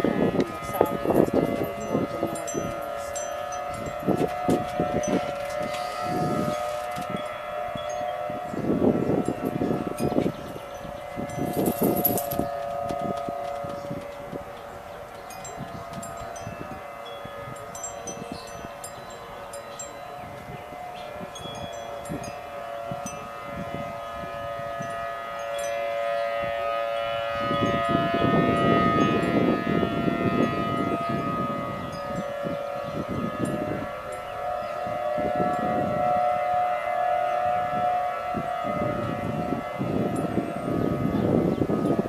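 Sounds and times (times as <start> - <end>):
tornado warning siren: 0.0 - 42.0
wind gusts: 0.0 - 42.0.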